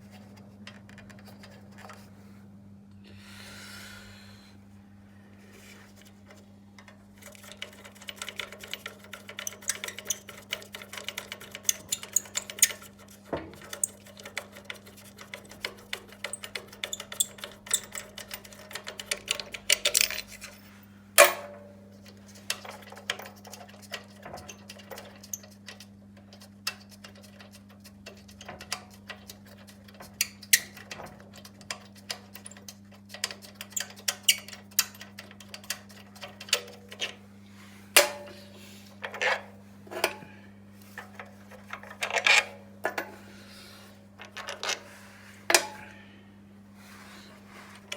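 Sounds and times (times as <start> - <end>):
low electrical hum: 0.0 - 47.9
metal parts clicking and tapping: 6.3 - 37.2, 38.0 - 38.4, 44.2 - 44.8.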